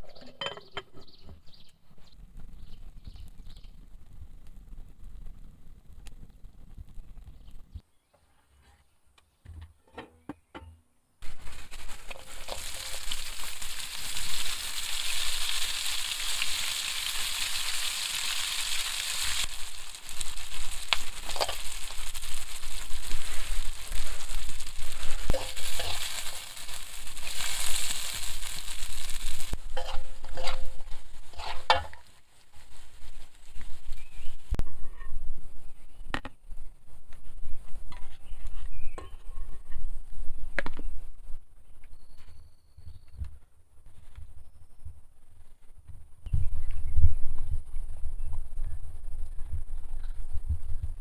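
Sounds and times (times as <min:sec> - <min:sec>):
food sizzling in hot oil: 0:11.2 - 0:34.6.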